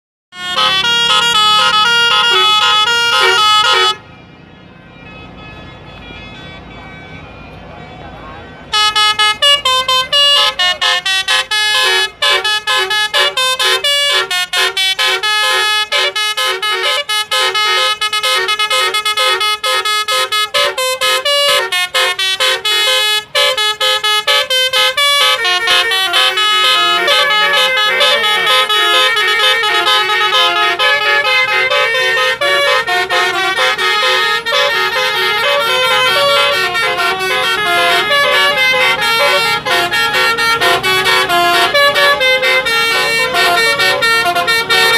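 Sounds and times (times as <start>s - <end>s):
air horns playing a melody: 0.3s - 4.2s, 4.8s - 44.9s.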